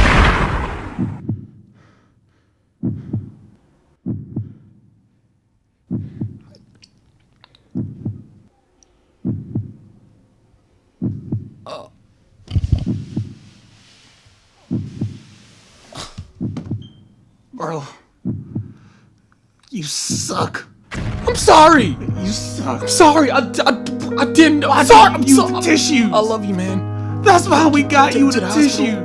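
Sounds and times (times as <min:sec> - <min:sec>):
heartbeat thumps: 0:01.2 - 0:01.6, 0:02.8 - 0:04.7, 0:05.9 - 0:06.4, 0:07.8 - 0:08.3, 0:09.2 - 0:09.9, 0:11.0 - 0:11.6, 0:16.3 - 0:16.8, 0:18.2 - 0:18.8.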